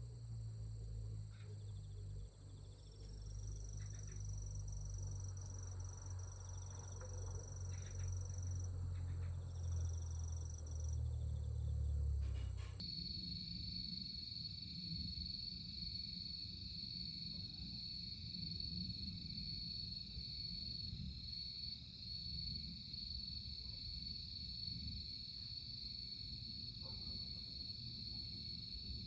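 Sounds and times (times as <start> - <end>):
low steady rumble: 0.0 - 12.8
night insects trilling: 0.2 - 12.2, 12.8 - 29.0.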